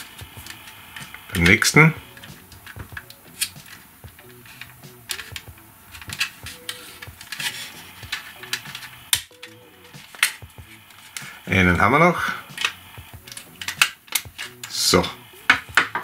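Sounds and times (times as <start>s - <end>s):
plastic clicks and scrapes: 2.1s - 11.3s, 12.5s - 14.8s.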